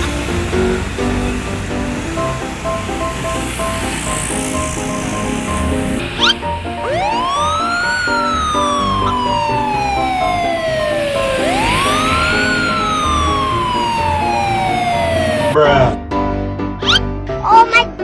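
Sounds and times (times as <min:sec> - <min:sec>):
wailing siren: 0:05.2 - 0:15.6.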